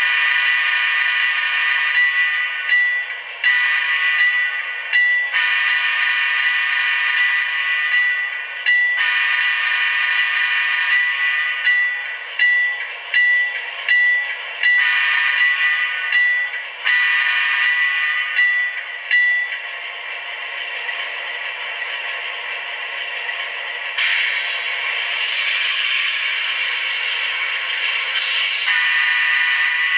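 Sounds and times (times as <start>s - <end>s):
tinny locomotive bell: 0.4s - 19.8s
diesel engine sound: 18.8s - 29.9s.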